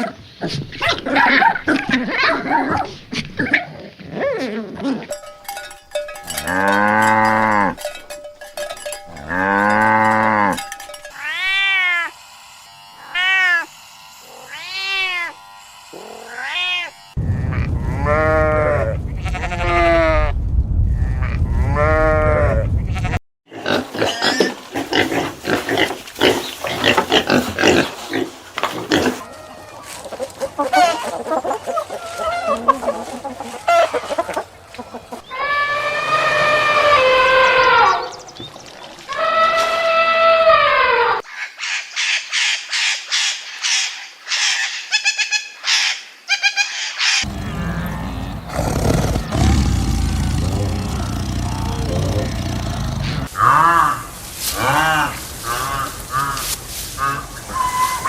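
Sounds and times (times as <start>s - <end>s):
pigs grunting and squealing: 0.0s - 5.2s, 6.2s - 7.9s, 9.1s - 12.2s, 14.3s - 18.6s, 23.5s - 29.6s, 47.2s - 56.4s
animal sound with low rumble: 16.0s - 23.2s, 47.2s - 58.0s.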